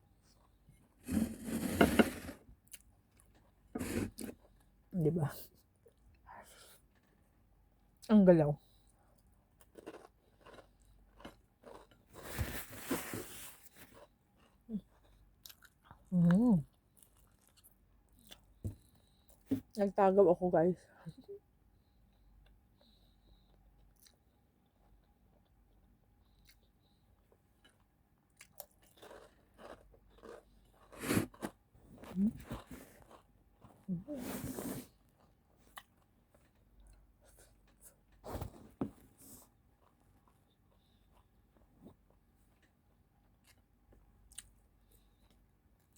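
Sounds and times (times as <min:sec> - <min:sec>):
chewing crunchy food: 0:09.0 - 0:12.4, 0:13.7 - 0:19.4, 0:22.4 - 0:34.0, 0:34.9 - 0:38.2, 0:39.4 - 0:45.9.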